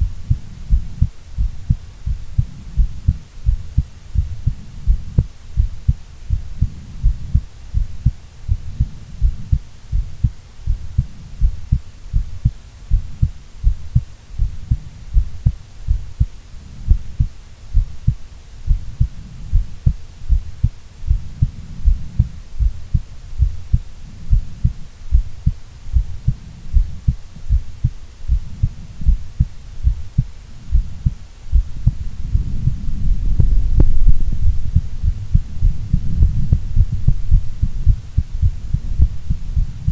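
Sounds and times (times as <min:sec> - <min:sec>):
heartbeat thumping: 0:00.0 - 0:39.9
low rumble: 0:18.7 - 0:39.9.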